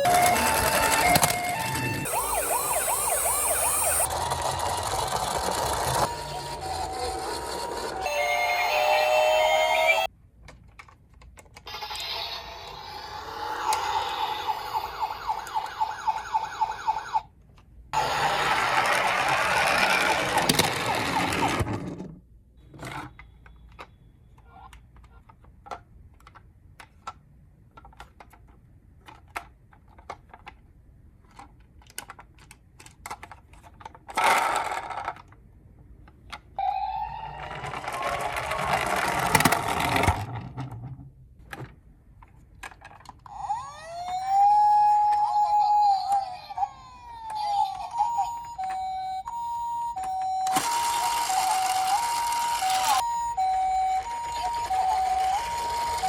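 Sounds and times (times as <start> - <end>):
toy electronic sirens: 0.0 - 10.1, 11.6 - 17.3, 18.0 - 21.6, 36.6 - 38.8, 43.3 - 56.0
plastic clicks: 24.7 - 34.2.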